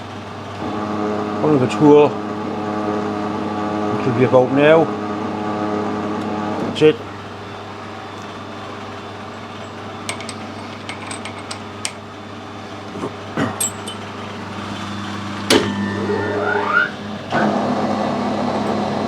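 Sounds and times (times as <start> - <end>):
machine shop hum: 0.0 - 19.0
tools clicking and knocking: 9.6 - 12.0, 13.6 - 14.1.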